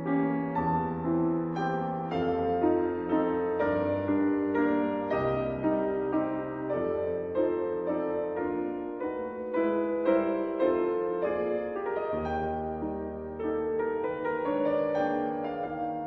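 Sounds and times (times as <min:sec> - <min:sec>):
slow piano music: 0:00.0 - 0:16.0.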